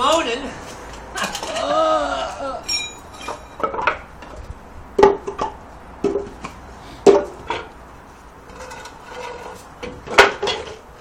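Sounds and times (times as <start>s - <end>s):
ringing metal knocks and clanks: 2.6s - 4.4s.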